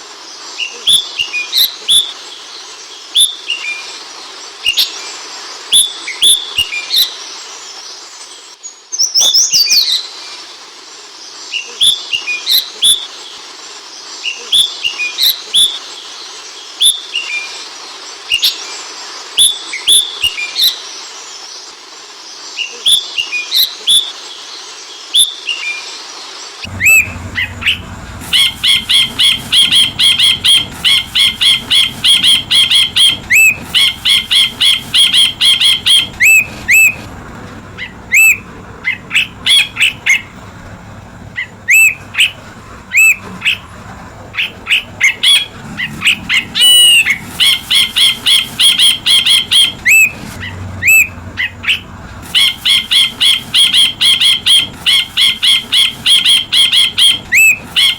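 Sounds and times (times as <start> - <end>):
bird calling with ringing chirps: 26.7 - 57.9.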